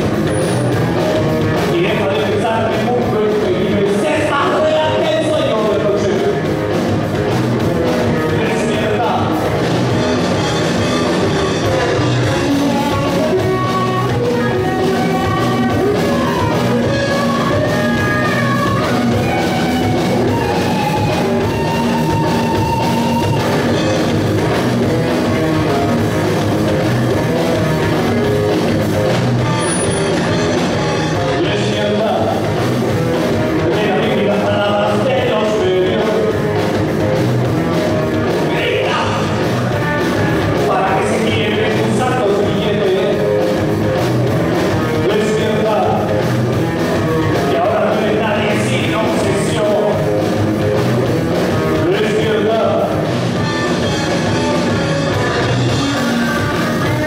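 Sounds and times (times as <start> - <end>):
bass guitar: 0.0 - 57.0
drum kit: 0.0 - 57.0
electric guitars: 0.0 - 57.0
person singing: 11.5 - 23.6, 38.3 - 43.4.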